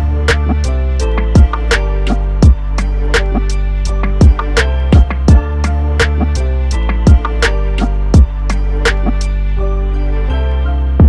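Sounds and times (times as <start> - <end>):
bass and synth music: 0.0 - 11.0
drum hit: 0.3 - 1.8, 2.4 - 7.5, 8.2 - 9.2.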